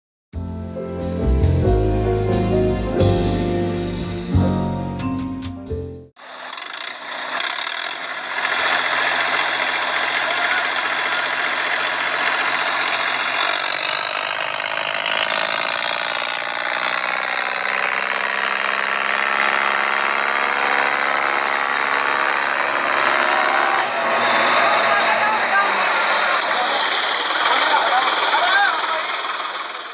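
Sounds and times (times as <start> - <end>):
tractor engine running: 6.2 - 29.9.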